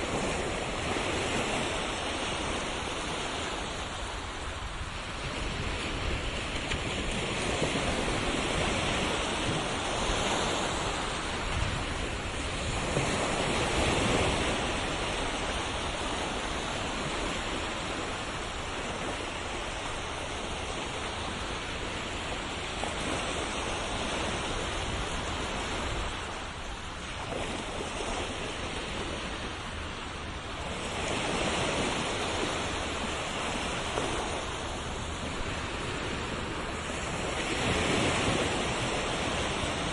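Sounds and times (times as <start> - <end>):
ocean surf washing ashore: 0.0 - 39.9.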